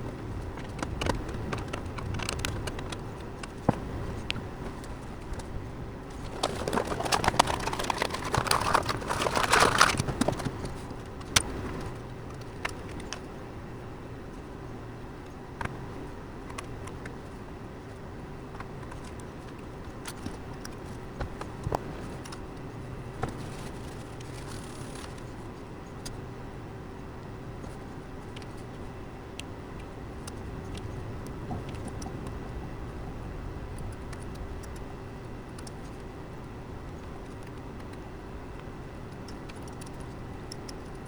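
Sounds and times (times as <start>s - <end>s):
steady background hum: 0.0s - 41.0s
hardware being handled: 6.1s - 10.7s.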